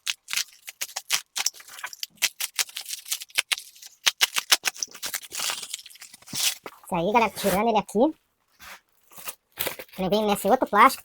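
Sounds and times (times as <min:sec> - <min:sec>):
plastic packaging crinkling: 0:00.0 - 0:06.9.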